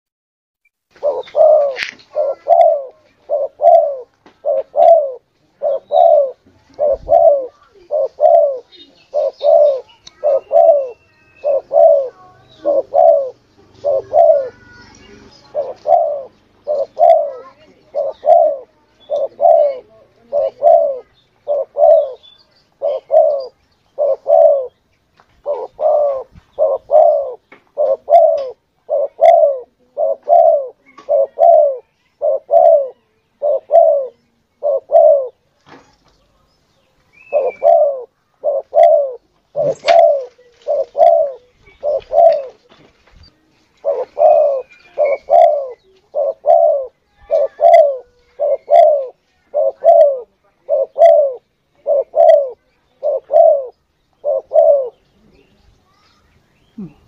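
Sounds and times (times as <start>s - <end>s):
dove cooing: 0.9s - 24.8s, 25.4s - 35.4s, 37.2s - 42.8s, 43.7s - 55.5s.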